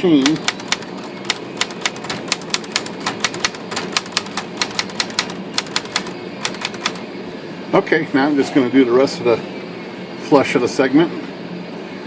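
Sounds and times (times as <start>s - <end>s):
manual typewriter typing clicks: 0.0s - 7.0s.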